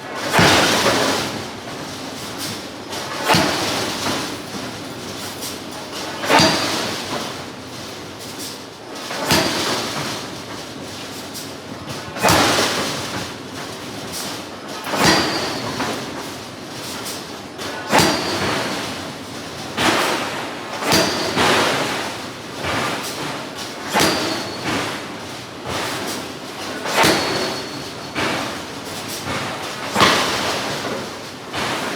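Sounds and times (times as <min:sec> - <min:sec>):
shop noise: 0:00.0 - 0:31.9
forging hammer striking steel: 0:09.2 - 0:09.8, 0:14.9 - 0:15.9, 0:17.9 - 0:18.7, 0:19.8 - 0:22.1, 0:23.8 - 0:25.0, 0:26.9 - 0:28.4, 0:29.9 - 0:31.0.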